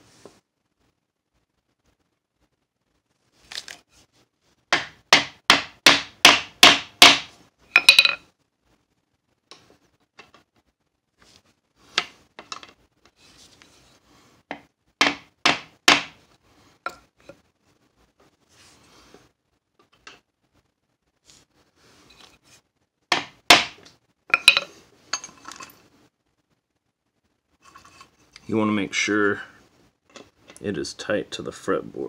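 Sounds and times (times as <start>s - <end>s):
hammer tapping metal: 4.8s - 8.2s.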